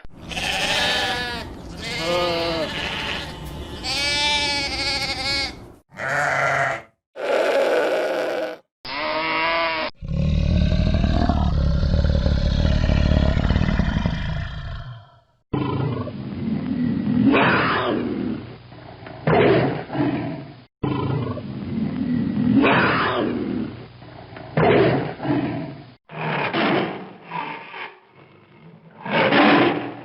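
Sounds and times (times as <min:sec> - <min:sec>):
animal bleating call: 0:00.0 - 0:09.9
deep animal roar: 0:09.9 - 0:18.2
growling roars: 0:10.0 - 0:18.4.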